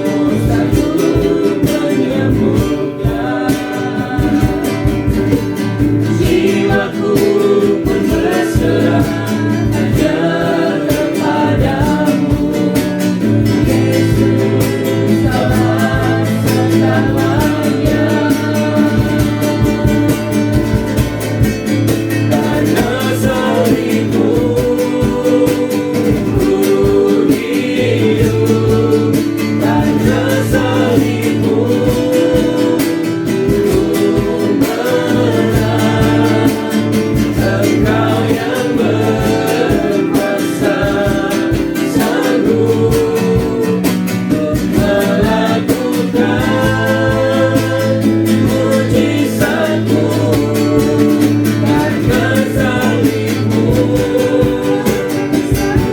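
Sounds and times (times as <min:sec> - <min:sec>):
bass line: 0:00.0 - 0:55.9
strummed guitar: 0:00.0 - 0:55.9
voices singing: 0:00.0 - 0:55.9.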